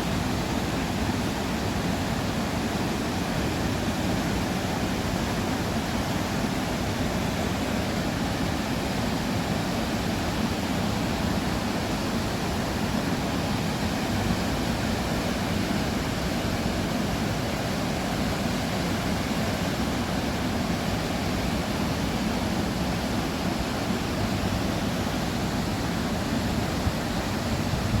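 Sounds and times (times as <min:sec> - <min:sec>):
steady rushing noise: 0:09.4 - 0:28.0.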